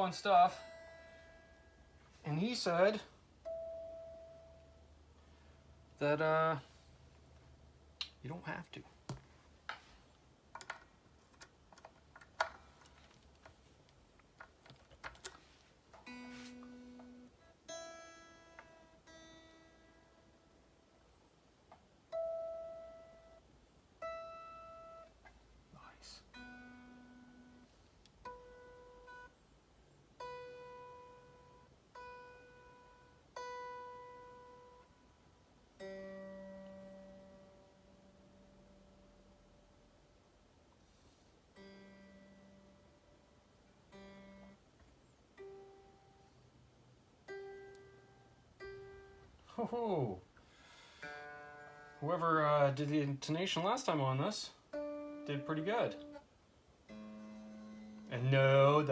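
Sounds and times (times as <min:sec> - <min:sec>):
electric guitar notes plucked: 0:00.0 - 0:08.2, 0:16.0 - 0:20.9, 0:22.0 - 0:25.2, 0:26.2 - 0:29.4, 0:30.2 - 0:40.2, 0:41.5 - 0:49.9, 0:50.5 - 0:52.8, 0:54.6 - 0:58.9.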